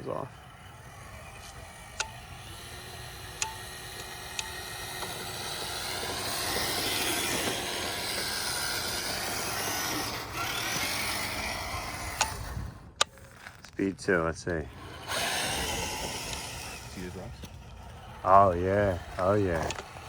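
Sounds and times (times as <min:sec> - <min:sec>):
toy truck electric motor: 0:00.0 - 0:20.0
tyres rolling over ground: 0:00.0 - 0:20.0
sharp clicks: 0:01.4 - 0:13.9.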